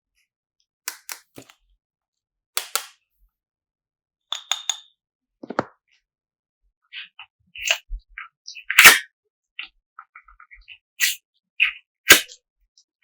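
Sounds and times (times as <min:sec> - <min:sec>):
wet pops and clicks of slime: 0:02.6 - 0:02.9.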